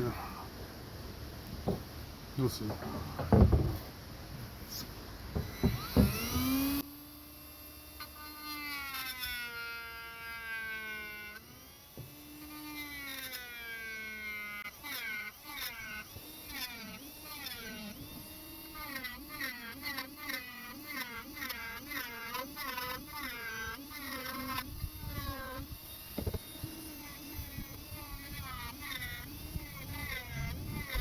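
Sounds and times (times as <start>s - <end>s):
rotary tool whining on wood: 1.1s - 31.0s
knocks: 1.6s - 1.9s, 2.7s - 3.9s, 5.4s - 6.4s.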